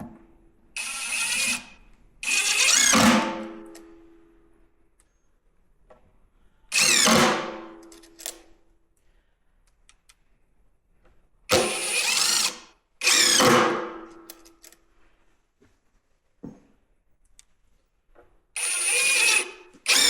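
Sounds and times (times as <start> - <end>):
cordless drill driving screws: 0.8 - 3.3, 6.7 - 7.5, 11.5 - 13.8, 18.6 - 20.0.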